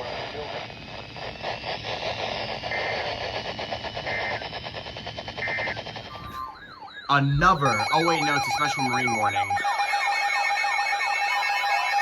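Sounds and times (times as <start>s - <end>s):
radio static crackling: 0.0s - 6.5s, 7.1s - 9.6s.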